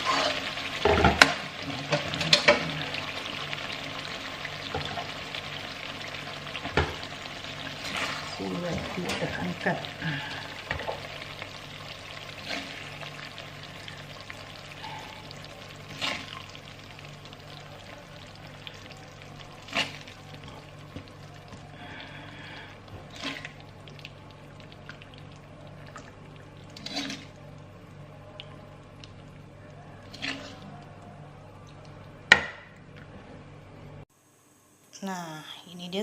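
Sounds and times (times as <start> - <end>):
metal spatula scraping a pan: 0.0 - 1.3
faint sizzling: 0.0 - 32.2, 33.6 - 36.0.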